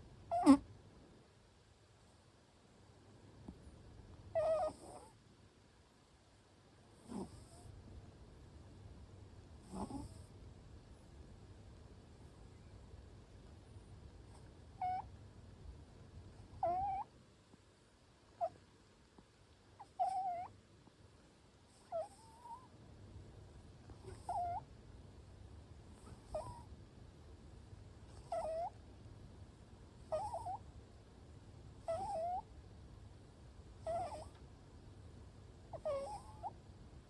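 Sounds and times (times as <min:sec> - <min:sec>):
cat snoring squeaky whistle: 0:00.3 - 0:00.6, 0:04.4 - 0:05.1, 0:07.1 - 0:07.6, 0:09.7 - 0:10.2, 0:20.0 - 0:20.5, 0:21.8 - 0:22.6, 0:24.0 - 0:24.6, 0:26.3 - 0:26.7, 0:28.2 - 0:28.7, 0:30.1 - 0:30.6, 0:31.9 - 0:32.4, 0:33.9 - 0:34.3, 0:35.8 - 0:36.5.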